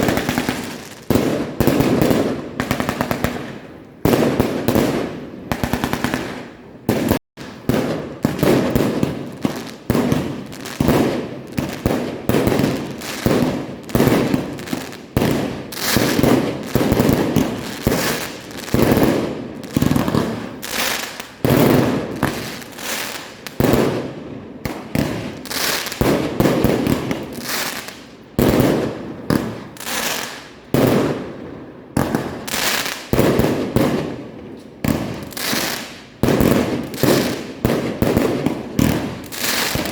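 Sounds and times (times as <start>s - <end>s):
fireworks bangs and crackling: 0.0s - 39.9s.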